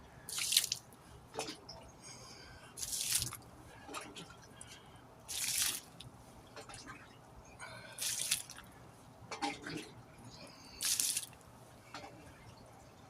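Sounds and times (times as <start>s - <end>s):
water splashing: 0.3s - 1.6s, 2.8s - 3.4s, 5.3s - 6.1s, 7.8s - 8.7s, 10.7s - 11.4s
water dripping: 0.3s - 1.9s, 2.8s - 3.5s, 4.2s - 6.8s, 7.9s - 8.7s, 10.8s - 12.6s.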